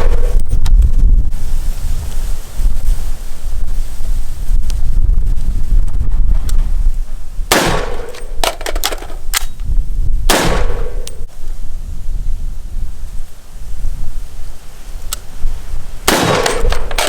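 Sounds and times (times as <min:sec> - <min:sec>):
rifle shots with echo: 0:00.0 - 0:00.4, 0:07.5 - 0:08.9, 0:10.3 - 0:11.3, 0:16.1 - 0:17.0
wind rumbling on microphone: 0:00.0 - 0:17.0.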